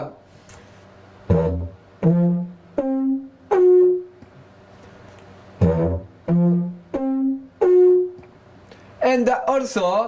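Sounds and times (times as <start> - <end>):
didgeridoo horn toots: 1.2 - 4.2, 5.6 - 8.2.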